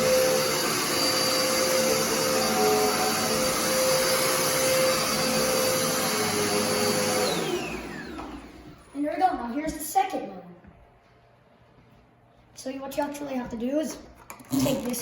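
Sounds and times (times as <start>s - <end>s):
stick vacuum motor whirring: 0.0s - 8.9s.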